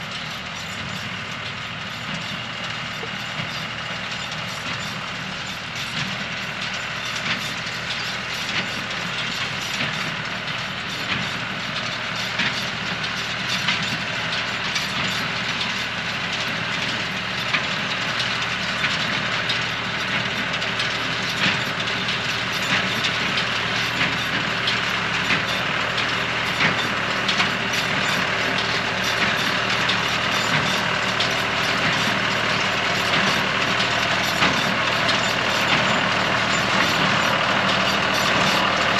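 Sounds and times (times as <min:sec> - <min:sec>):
tractor engine drone: 0:00.0 - 0:38.9
baler mechanical clatter: 0:12.3 - 0:38.9.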